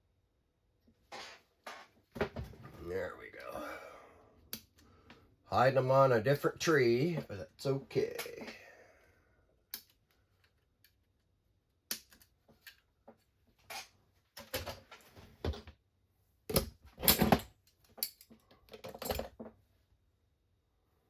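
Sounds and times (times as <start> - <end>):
plastic parts clicking and clattering: 13.6 - 15.6, 16.5 - 19.6.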